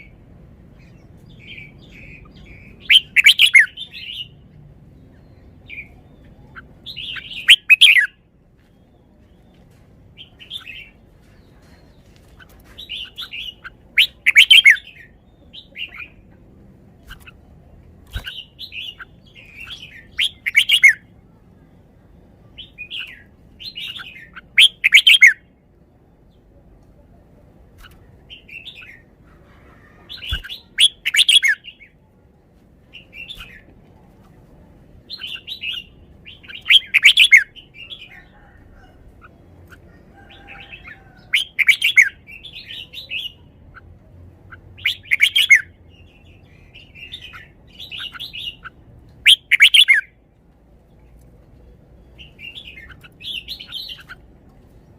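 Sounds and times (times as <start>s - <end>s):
bird singing quick phrases: 0.8s - 4.4s, 18.0s - 21.0s, 44.8s - 50.1s.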